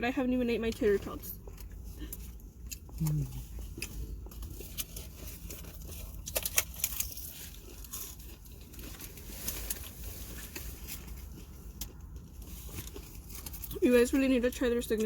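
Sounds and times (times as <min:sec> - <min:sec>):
paper packaging crinkling and tearing: 0:04.4 - 0:11.4.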